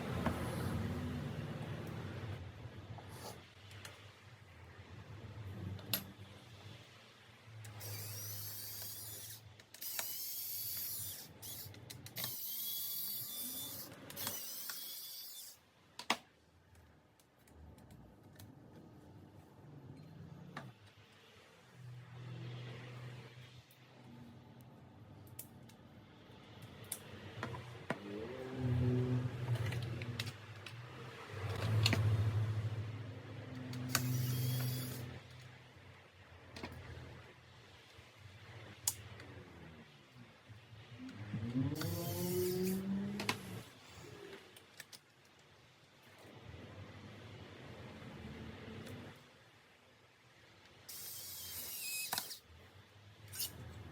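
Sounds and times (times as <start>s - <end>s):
ratchet-like scratchy noise: 7.8s - 15.6s, 33.9s - 35.1s, 41.8s - 42.9s
small electric motor humming: 7.8s - 15.6s, 33.9s - 35.1s, 41.7s - 43.6s, 50.9s - 52.4s.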